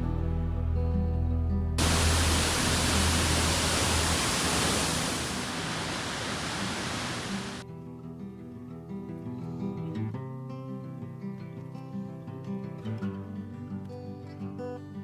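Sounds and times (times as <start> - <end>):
water rushing: 1.8 - 7.6.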